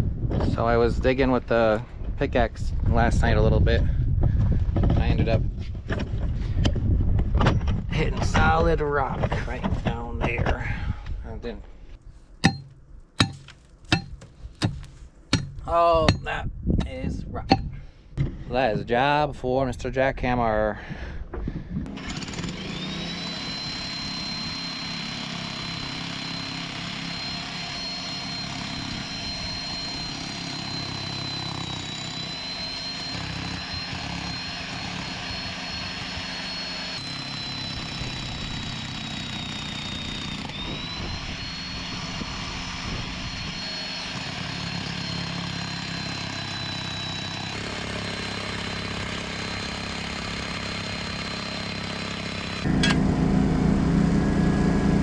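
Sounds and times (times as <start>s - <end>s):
jackhammer breaking rock: 21.9s - 41.9s
high motor whine: 21.9s - 55.0s.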